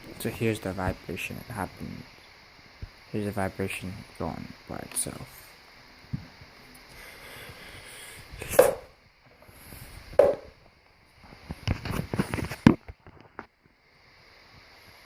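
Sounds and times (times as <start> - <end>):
air horn sputtering pops: 8.5 - 8.9.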